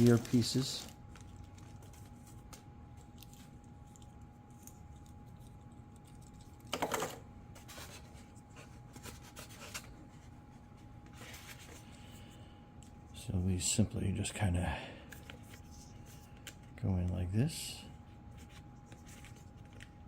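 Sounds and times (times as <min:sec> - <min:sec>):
packaging crinkling: 0:00.0 - 0:06.5.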